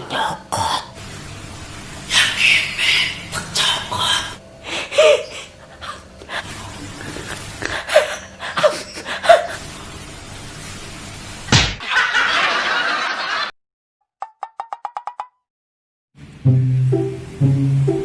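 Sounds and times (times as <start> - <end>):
loud hand slap: 11.5 - 11.8.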